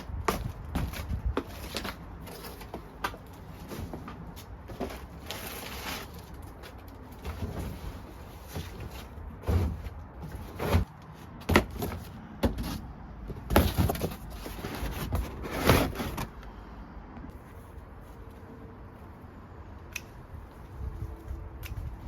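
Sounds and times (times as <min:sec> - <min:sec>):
packaging rustling scrapes: 0:04.7 - 0:09.2.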